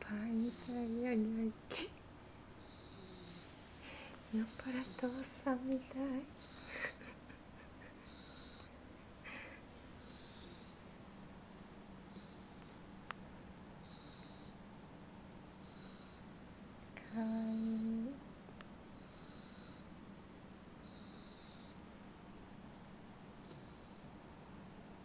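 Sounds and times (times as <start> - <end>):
whistling snoring: 2.6 - 3.5, 6.4 - 6.9, 8.0 - 8.7, 10.0 - 10.8, 12.1 - 12.7, 13.8 - 14.6, 15.6 - 16.2, 17.2 - 18.0, 19.0 - 19.9, 20.8 - 21.8, 23.4 - 24.2.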